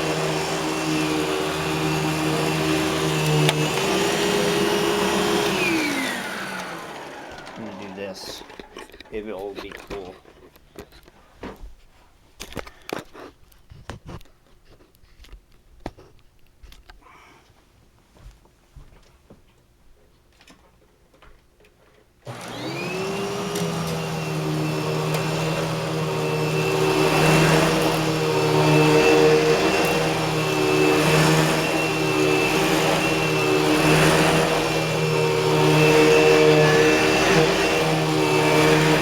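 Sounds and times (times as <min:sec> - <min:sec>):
vacuum cleaner motor running: 0:00.0 - 0:10.4, 0:22.3 - 0:39.0.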